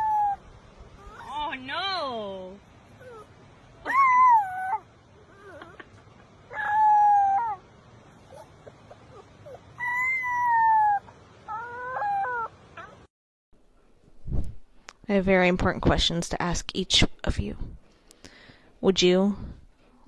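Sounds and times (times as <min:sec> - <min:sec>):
animal calling: 0:02.9 - 0:13.1.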